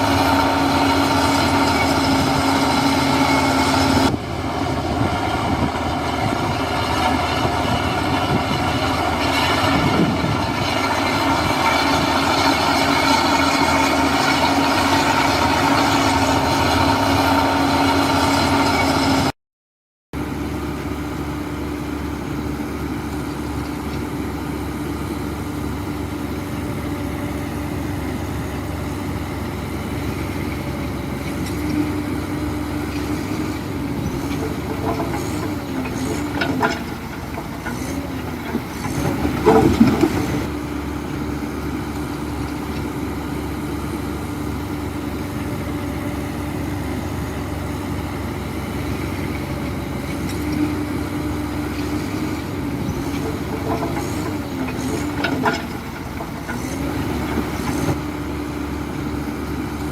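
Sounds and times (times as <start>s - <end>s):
heavy diesel engine running: 0.0s - 19.3s, 20.2s - 59.9s
knocks and clatter: 34.1s - 40.5s, 53.1s - 56.6s.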